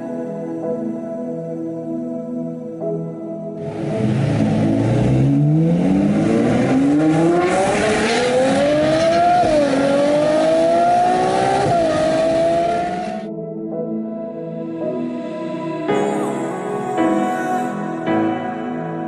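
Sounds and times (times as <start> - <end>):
sports car engine accelerating hard: 3.6 - 13.3.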